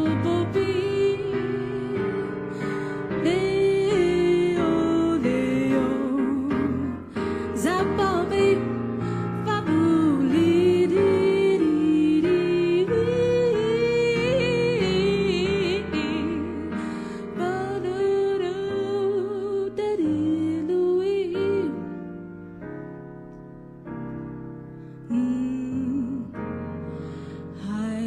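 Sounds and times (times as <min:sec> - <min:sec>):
slow jazz music: 0:00.0 - 0:28.0.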